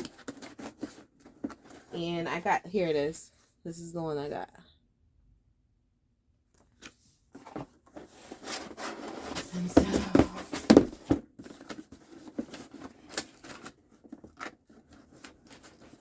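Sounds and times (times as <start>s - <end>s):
cardboard box handling: 0.0s - 2.1s, 7.3s - 16.0s.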